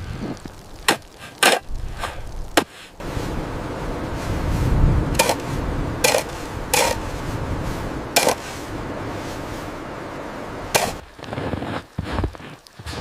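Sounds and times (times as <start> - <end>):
low rumble: 1.8 - 11.0
hard objects hitting: 5.2 - 7.1, 8.2 - 8.5, 10.7 - 11.0.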